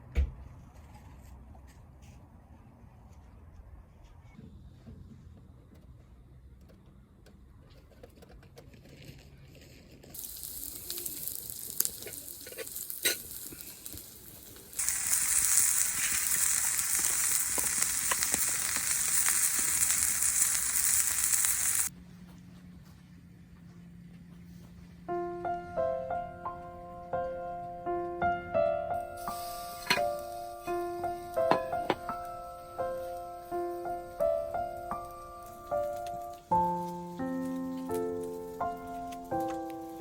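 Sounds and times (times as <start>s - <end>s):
food sizzling in a pan: 10.2s - 21.9s, 29.0s - 40.0s.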